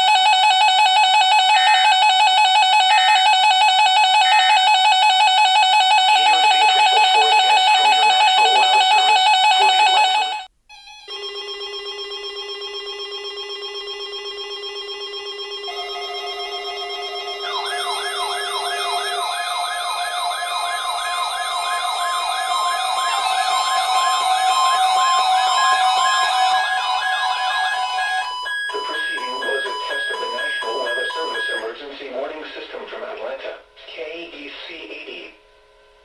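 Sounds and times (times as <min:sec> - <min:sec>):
steady multi-tone electronic sound: 0:01.4 - 0:10.5, 0:11.1 - 0:33.1
warbling electronic notes: 0:06.0 - 0:10.4, 0:11.1 - 0:31.6
quiet layered synth tones: 0:11.5 - 0:32.0.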